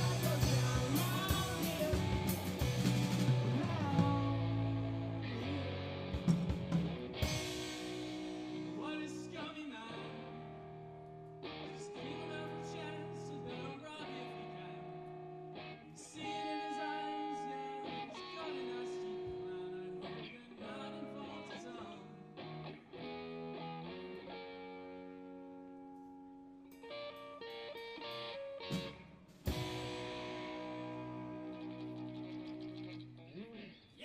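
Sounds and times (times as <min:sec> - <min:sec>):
live band playing: 0:00.0 - 0:09.2, 0:27.7 - 0:32.9
strummed guitar chords: 0:00.0 - 0:34.0.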